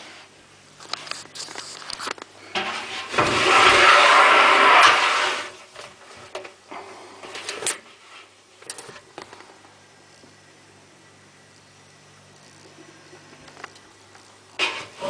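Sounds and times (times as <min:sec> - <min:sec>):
tumble dryer scraping rattle: 0:02.4 - 0:06.4, 0:14.6 - 0:15.0.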